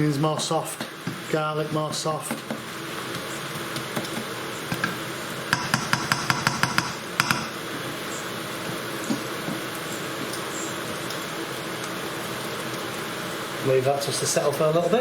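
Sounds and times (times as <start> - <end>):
food sizzling in oil: 0.0 - 15.0
utensil tapping frying pan: 0.3 - 7.8.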